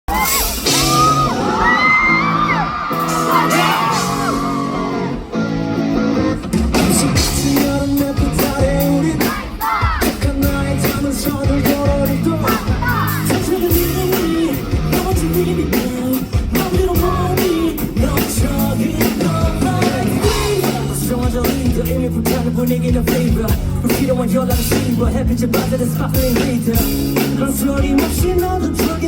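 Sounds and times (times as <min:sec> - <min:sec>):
audience screaming and cheering: 0:00.0 - 0:21.3
drums steady beat: 0:00.0 - 0:29.0
live rock band playing: 0:00.1 - 0:29.0.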